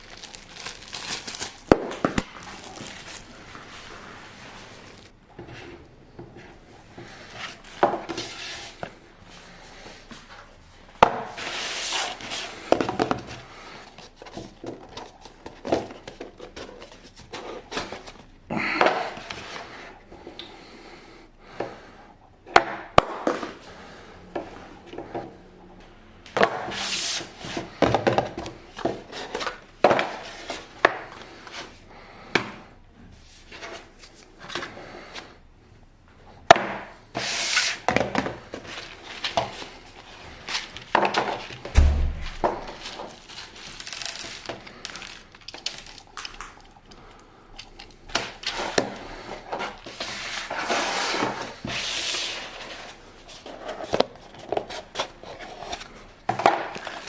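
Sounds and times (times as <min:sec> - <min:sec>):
packaging rustling and rubbing: 0:00.0 - 0:05.2, 0:41.8 - 0:46.4.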